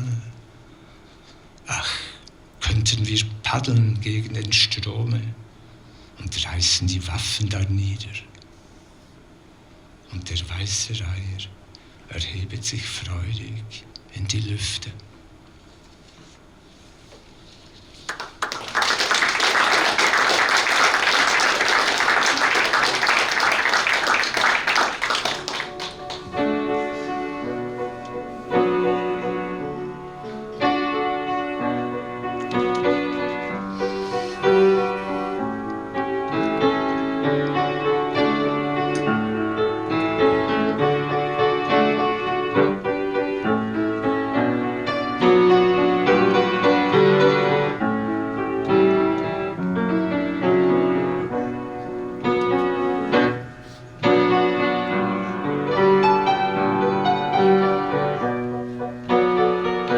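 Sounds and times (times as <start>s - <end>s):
audience applause: 18.1s - 26.4s
piano playing: 18.1s - 59.9s.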